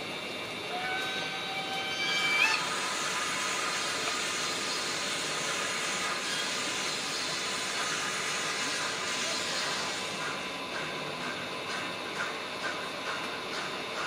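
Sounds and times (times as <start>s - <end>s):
steam whistle: 0.7s - 2.9s
model locomotive steam hiss: 2.6s - 10.3s.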